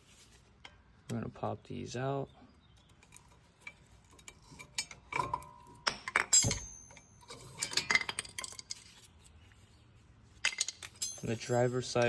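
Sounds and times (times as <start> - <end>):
metal clinks and scrapes: 2.9 - 12.0
short metallic ring: 6.3 - 7.6.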